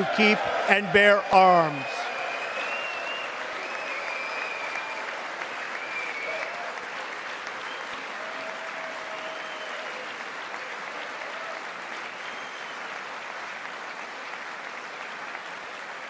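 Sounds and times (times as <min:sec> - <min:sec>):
faint cheers: 0:00.0 - 0:06.8, 0:08.1 - 0:10.0
audience applauding: 0:00.0 - 0:16.0.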